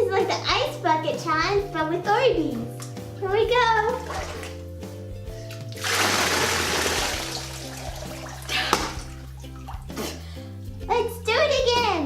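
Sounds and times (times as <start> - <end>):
water beads pouring and splashing: 5.5 - 10.0.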